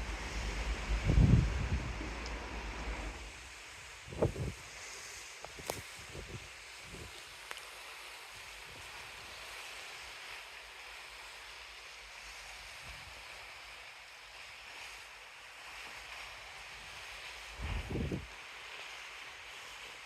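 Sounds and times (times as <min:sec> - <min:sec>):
wind gusts on microphone: 0:00.0 - 0:04.8, 0:05.4 - 0:07.2, 0:17.6 - 0:18.4
sea water rushing past ship: 0:00.0 - 0:20.0.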